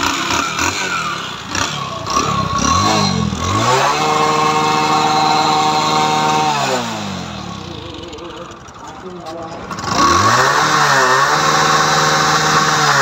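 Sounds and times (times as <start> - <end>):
motorcycle engine revving: 0.0 - 13.0.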